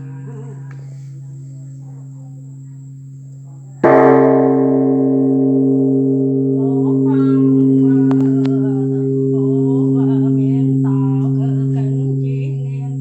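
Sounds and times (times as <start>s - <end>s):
temple bell ringing: 0.0s - 13.0s
person chanting: 3.6s - 13.0s.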